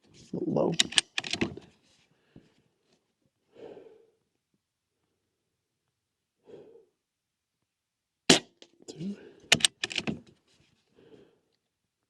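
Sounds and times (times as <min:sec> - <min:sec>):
soft breaths: 0:01.7 - 0:05.4, 0:06.4 - 0:07.0, 0:10.4 - 0:11.7.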